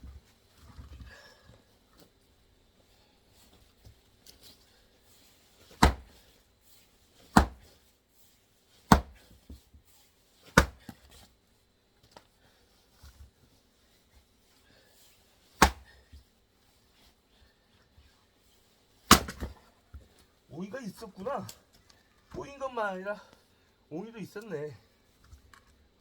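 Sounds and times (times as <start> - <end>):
axe strikes into wood: 5.8 - 6.2, 7.4 - 7.7, 8.9 - 9.2, 10.6 - 10.8, 15.6 - 15.9, 19.1 - 19.5.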